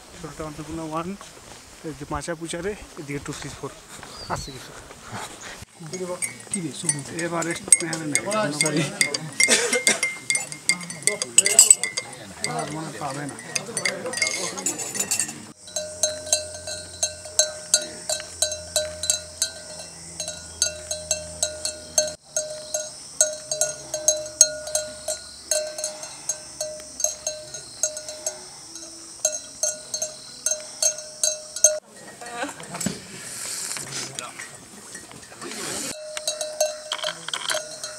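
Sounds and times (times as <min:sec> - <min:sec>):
metal bell struck: 0:05.9 - 0:31.8.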